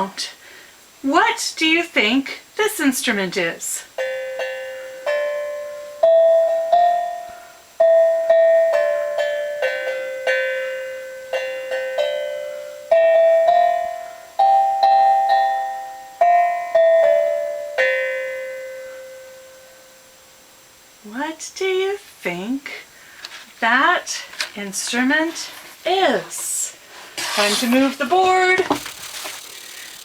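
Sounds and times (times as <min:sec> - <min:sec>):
wooden slit drum notes: 0:24.4 - 0:30.0.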